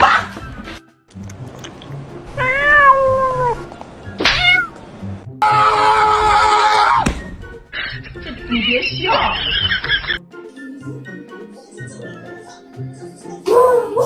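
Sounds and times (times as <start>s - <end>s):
background music: 0.0s - 14.0s
cat meowing: 2.4s - 4.8s.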